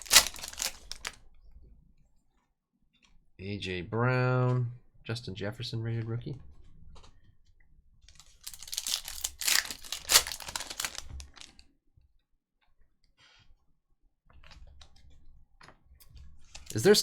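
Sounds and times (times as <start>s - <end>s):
foil wrapper tearing and crinkling: 0.0s - 1.2s, 8.1s - 11.6s, 16.5s - 17.0s.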